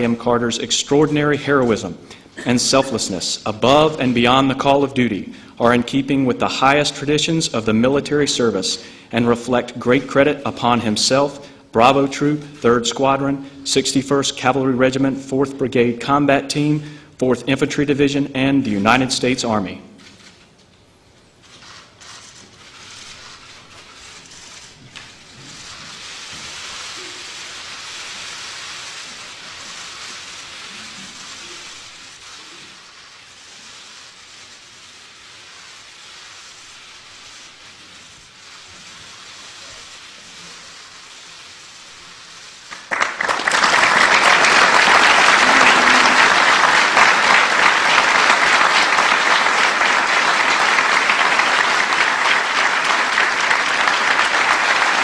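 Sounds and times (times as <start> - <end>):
audience applause: 42.7 - 55.0.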